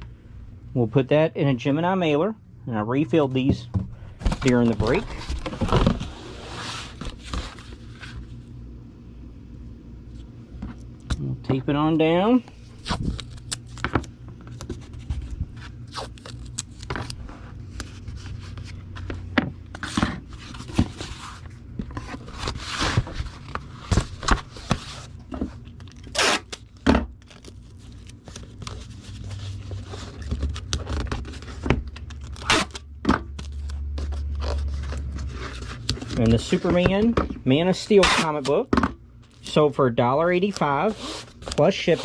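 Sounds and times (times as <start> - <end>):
cardboard mailer handled: 3.6 - 8.2
packing tape pulled off roll: 25.7 - 32.8.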